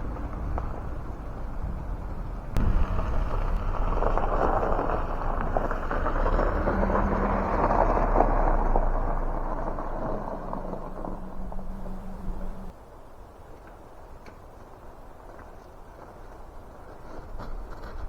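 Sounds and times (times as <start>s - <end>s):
strong wind buffeting microphone: 0.0s - 12.7s.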